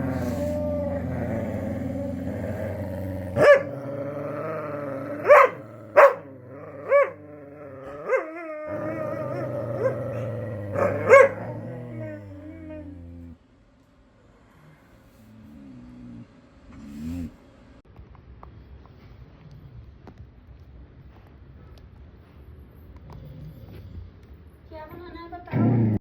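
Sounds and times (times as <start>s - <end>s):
dog growling: 0.0s - 13.4s, 15.4s - 17.4s
dog barking sharply: 5.3s - 6.3s.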